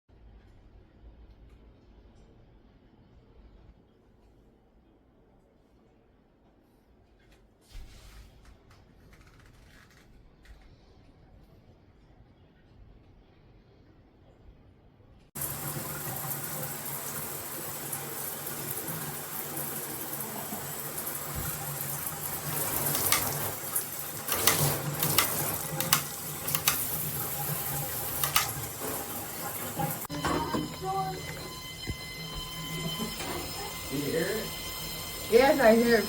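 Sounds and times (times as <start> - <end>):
shower water spraying: 15.4 - 30.1, 32.8 - 36.0.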